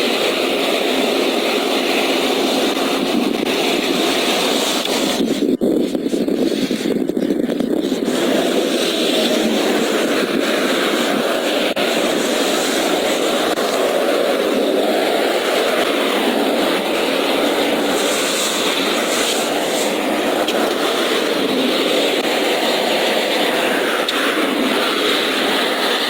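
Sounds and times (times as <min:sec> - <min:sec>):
highway traffic rushing: 0:00.0 - 0:26.0.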